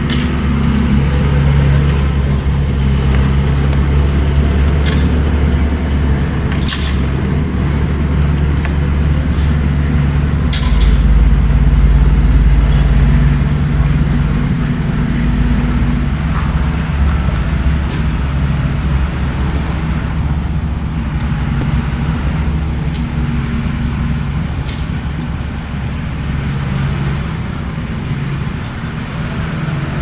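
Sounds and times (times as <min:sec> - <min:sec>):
sharp metal clanks: 0:00.0 - 0:07.4, 0:08.4 - 0:16.6
bulldozer diesel engine running: 0:00.0 - 0:30.0.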